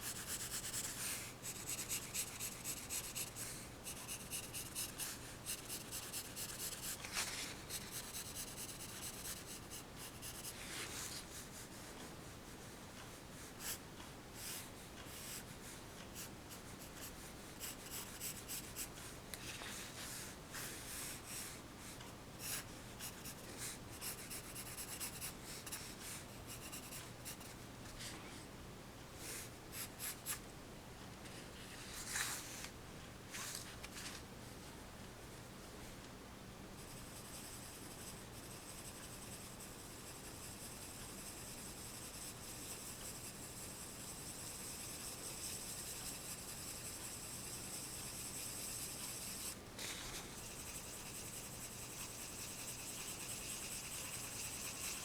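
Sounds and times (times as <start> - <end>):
pencil sketching on paper: 0.0 - 10.6, 16.2 - 18.9, 22.4 - 27.5, 36.8 - 55.0.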